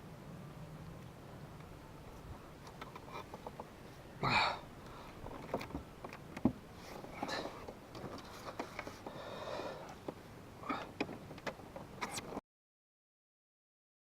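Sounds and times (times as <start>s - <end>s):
gear clicks and knocks: 5.1s - 9.2s, 9.9s - 12.4s
person breathing and sniffing: 8.2s - 10.0s.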